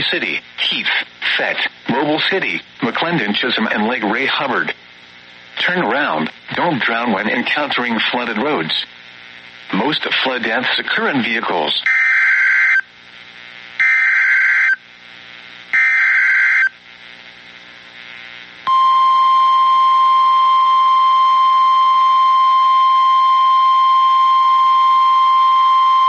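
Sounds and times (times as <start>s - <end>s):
steady single-tone warning alarm: 11.9s - 12.8s, 13.8s - 14.8s, 15.7s - 16.8s.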